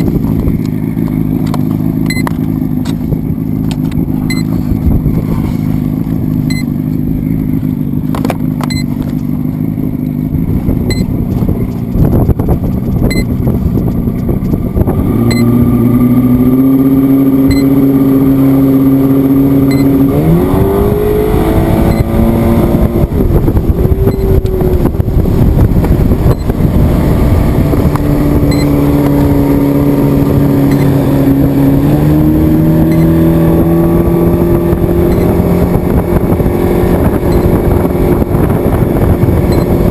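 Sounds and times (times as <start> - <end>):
motor humming: 19.1 - 39.9.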